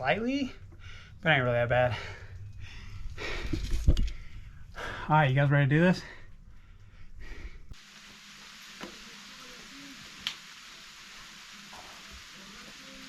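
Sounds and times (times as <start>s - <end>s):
light rain hissing: 7.2s - 13.0s.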